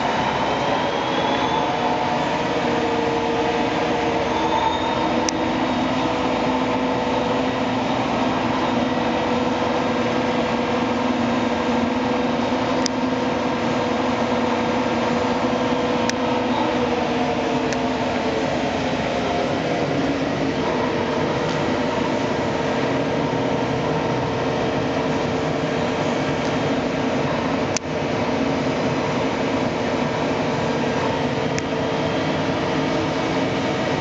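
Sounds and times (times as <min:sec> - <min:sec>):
lathe whining: 0:00.0 - 0:34.0.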